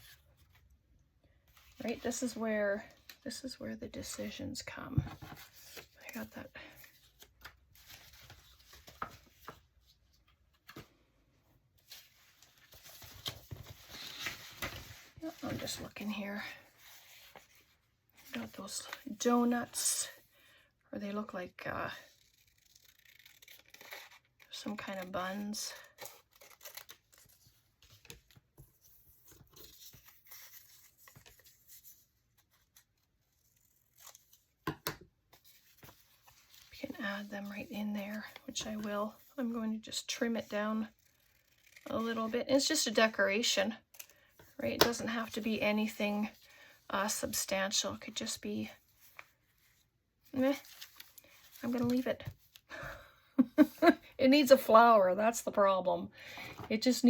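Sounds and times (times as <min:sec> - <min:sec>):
paper rustling: 0:06.8 - 0:11.0, 0:11.8 - 0:16.0, 0:35.3 - 0:39.3, 0:50.4 - 0:52.6.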